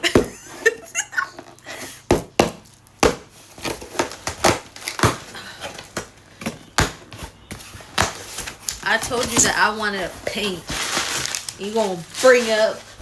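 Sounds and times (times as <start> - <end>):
packaging crinkling: 2.6 - 13.0.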